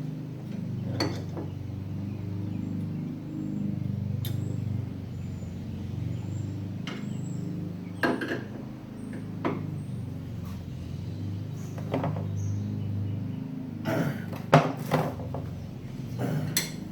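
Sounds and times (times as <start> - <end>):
hand tools clicking and knocking: 16.3 - 16.9.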